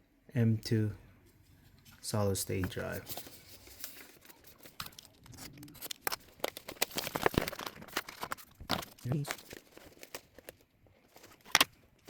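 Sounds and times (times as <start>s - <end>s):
plastic packaging clicks and crinkling: 2.7s - 12.0s.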